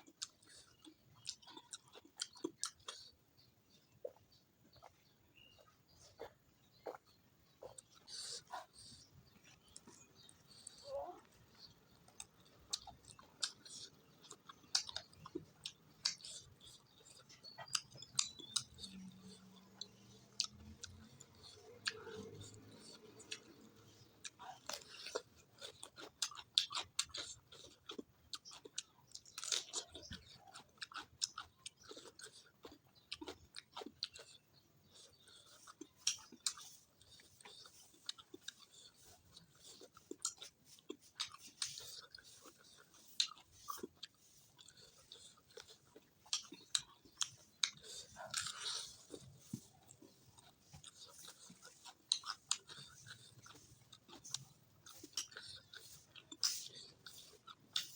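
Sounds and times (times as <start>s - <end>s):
person chewing crunchy food: 0.0s - 57.9s
wet mouth clicks: 33.3s - 57.9s.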